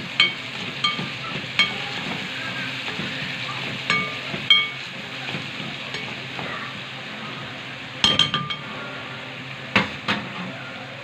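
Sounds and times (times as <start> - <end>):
garlic sizzling in oil: 0.0 - 11.0
metal spoon clinking on pot: 0.2 - 1.8, 3.9 - 4.8, 8.0 - 8.7.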